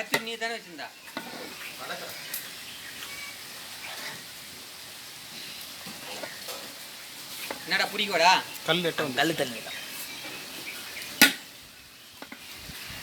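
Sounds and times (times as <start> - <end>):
chicken frying in a pot: 0.0 - 13.0
bird chirp: 0.4 - 4.2, 7.4 - 13.0.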